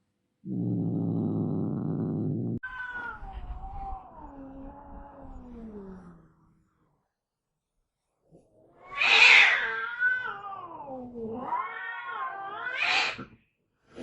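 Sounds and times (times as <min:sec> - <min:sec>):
cat hissing and yowling: 0:08.7 - 0:13.3.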